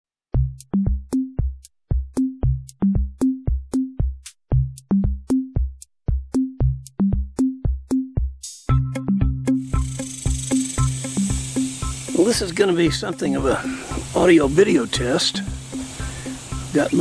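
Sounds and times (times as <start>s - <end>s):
electronic drum machine beat: 0.4s - 17.0s
sharp high ticks: 9.6s - 17.0s.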